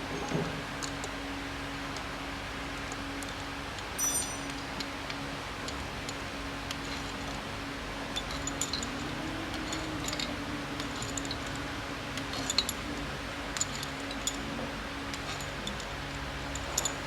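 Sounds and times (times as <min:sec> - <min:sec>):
steady low hum: 0:00.0 - 0:17.0
metal tools clinking: 0:04.0 - 0:04.9.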